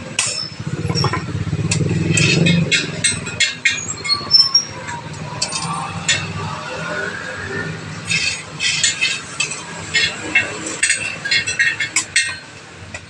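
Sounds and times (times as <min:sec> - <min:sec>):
engine running: 0:00.1 - 0:03.7
metallic clinks of spokes and tools: 0:00.2 - 0:06.4, 0:08.1 - 0:13.0.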